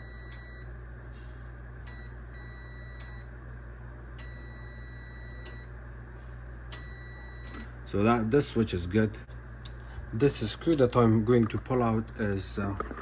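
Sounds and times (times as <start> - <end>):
multimeter continuity beeping: 0.0 - 0.7, 1.8 - 3.3, 4.2 - 5.8, 6.7 - 7.6
steady low hum: 0.0 - 13.0.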